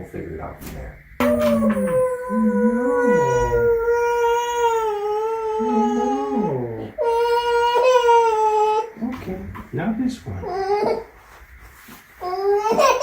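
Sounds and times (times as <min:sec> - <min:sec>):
adult voice: 0:00.0 - 0:03.8, 0:05.6 - 0:07.0
toddler crying: 0:01.2 - 0:09.0, 0:10.4 - 0:11.1, 0:12.2 - 0:13.0.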